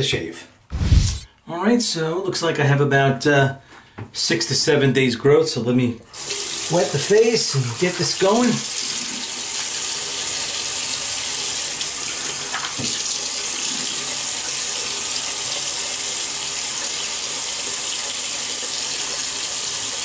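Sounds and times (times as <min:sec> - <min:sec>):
tap running into sink: 0:12.5 - 0:13.1.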